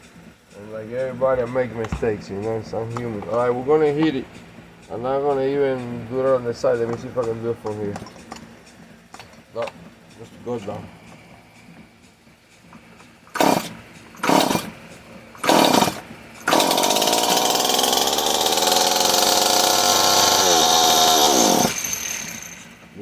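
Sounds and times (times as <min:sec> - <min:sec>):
chainsaw starting and running: 0:13.3 - 0:14.8, 0:15.4 - 0:22.8.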